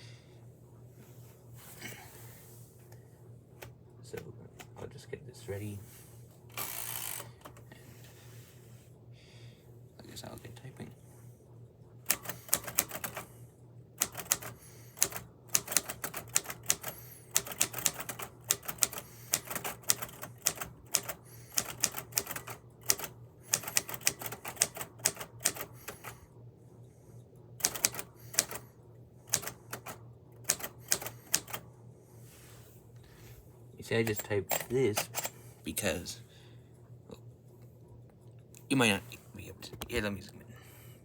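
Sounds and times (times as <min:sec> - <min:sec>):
typewriter keys clacking: 0:12.1 - 0:13.2, 0:14.0 - 0:25.7, 0:27.6 - 0:28.6, 0:29.3 - 0:31.6, 0:34.0 - 0:35.3.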